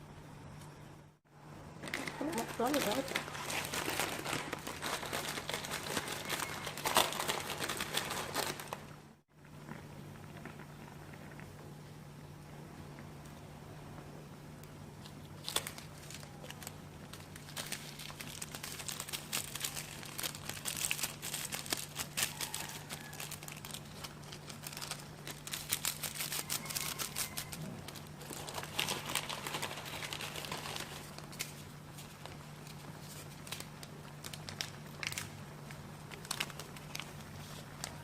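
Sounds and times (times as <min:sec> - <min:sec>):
plastic packet crinkling and tearing: 0:01.8 - 0:09.0, 0:15.3 - 0:38.0.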